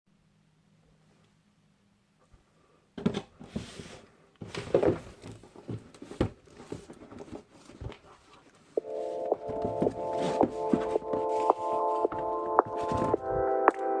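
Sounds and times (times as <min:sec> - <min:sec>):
packaging rustling: 0:04.6 - 0:14.0.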